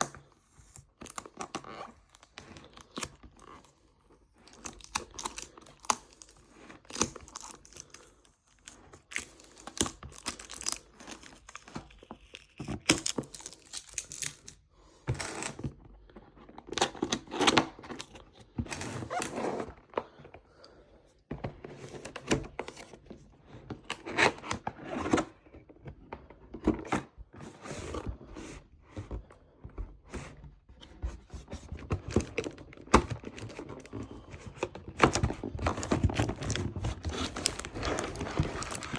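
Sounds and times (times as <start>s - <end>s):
packaging rustling and tearing: 0.1s - 14.6s, 31.5s - 38.9s.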